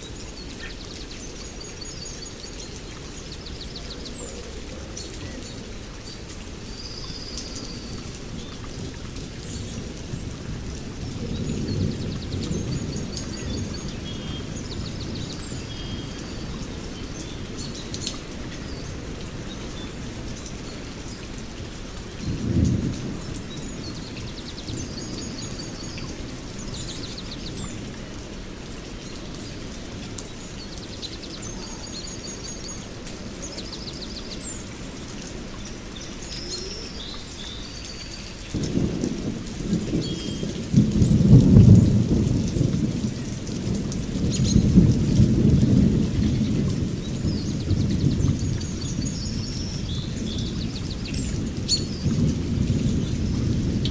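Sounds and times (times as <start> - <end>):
steady rain: 0.0 - 53.9
thunder rumbles: 7.9 - 20.9, 22.2 - 28.6, 38.4 - 53.9.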